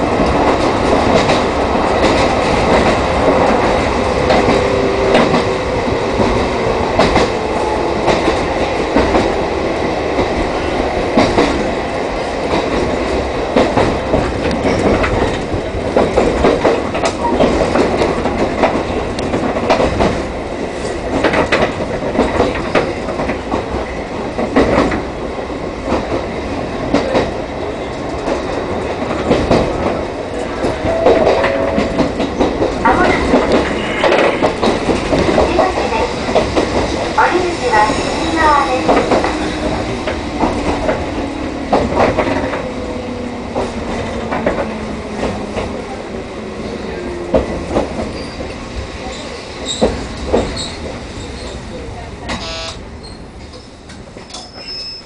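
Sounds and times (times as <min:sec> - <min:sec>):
train running rumble: 0:00.0 - 0:54.6
train wheels clicking over rail joints: 0:00.1 - 0:09.4
faint tone: 0:30.8 - 0:32.5.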